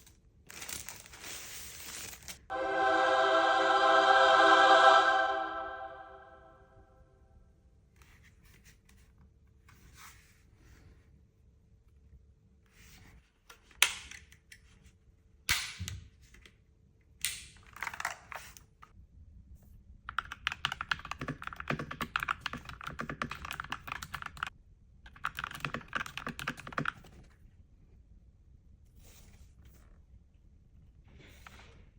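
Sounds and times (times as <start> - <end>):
handling rustle: 0.5 - 2.4
mechanical keyboard typing: 20.1 - 24.5, 25.1 - 27.2.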